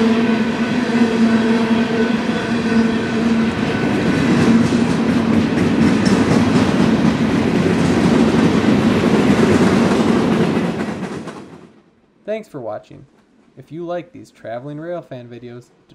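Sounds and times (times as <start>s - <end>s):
rumble of freight cars: 0.0s - 11.9s
train wheels clicking over rail joints: 4.0s - 11.8s.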